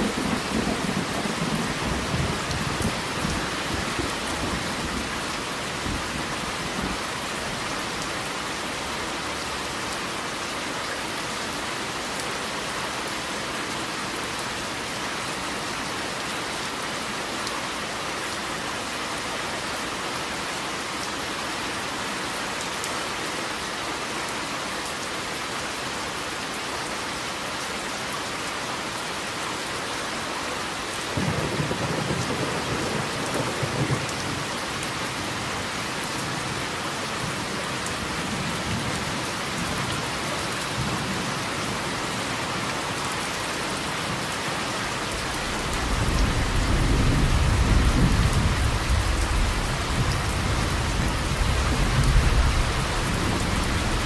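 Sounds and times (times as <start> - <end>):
thunder rumbling: 0.0 - 5.1
steady rain falling: 0.0 - 54.0.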